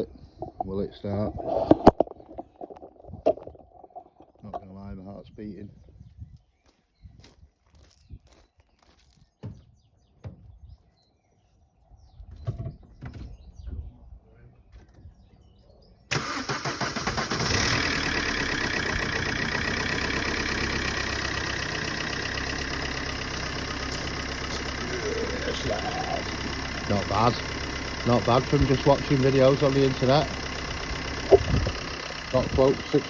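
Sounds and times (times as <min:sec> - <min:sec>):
diesel engine starting and idling: 0:16.1 - 0:33.0.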